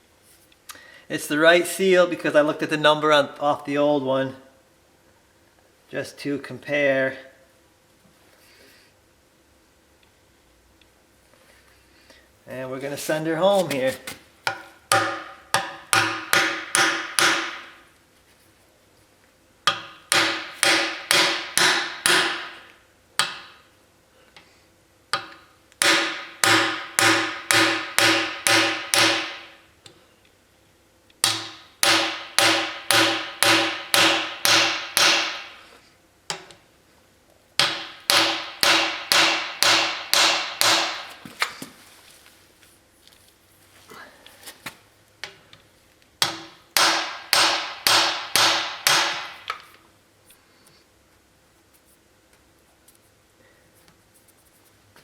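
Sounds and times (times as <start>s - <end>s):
hammer striking metal tool: 14.5s - 17.7s, 19.7s - 22.6s, 25.2s - 29.6s, 31.2s - 35.6s, 37.6s - 41.1s, 46.2s - 49.5s.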